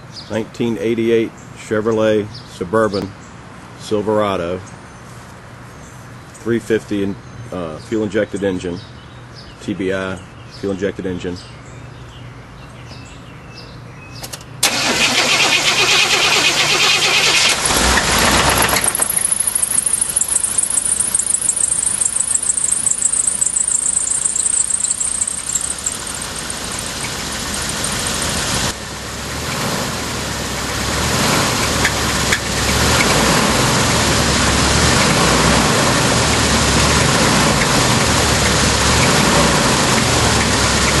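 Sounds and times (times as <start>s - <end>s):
engine running with knock: 17.5s - 41.0s
high-pitched chirping squeal: 18.4s - 28.7s.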